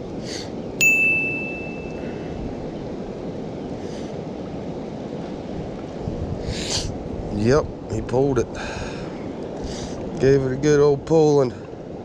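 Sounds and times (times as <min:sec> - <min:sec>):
bright ringing ding: 0:00.8 - 0:02.4
low rushing noise: 0:00.8 - 0:06.1.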